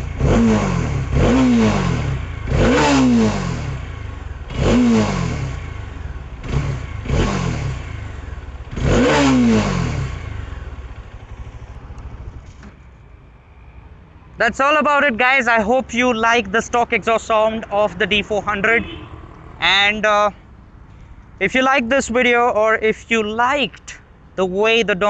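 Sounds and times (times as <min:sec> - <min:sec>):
motorcycle engine revving: 0:00.0 - 0:13.1, 0:15.9 - 0:21.4.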